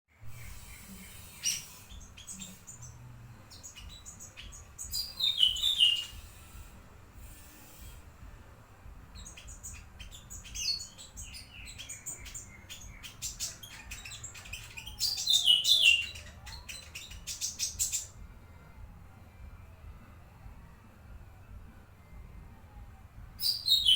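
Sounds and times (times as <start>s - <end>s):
songbird singing: 0.3s - 18.2s, 23.4s - 23.9s.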